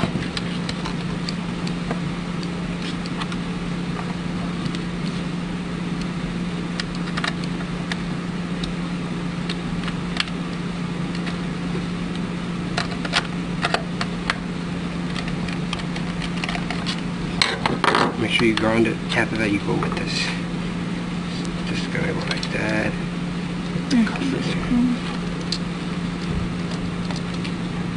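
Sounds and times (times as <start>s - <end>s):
room hum: 0.0s - 27.9s.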